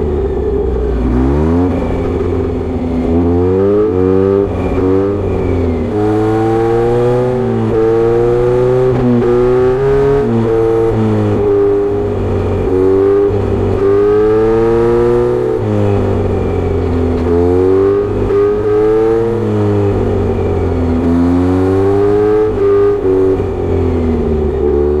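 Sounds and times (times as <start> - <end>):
motorcycle engine accelerating hard: 0.0 - 25.0
engine revs dropping at gear changes: 0.9 - 25.0.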